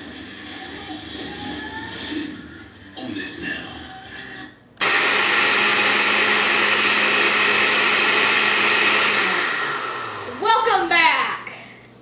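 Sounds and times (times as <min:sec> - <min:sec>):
blender running: 0:04.8 - 0:10.8.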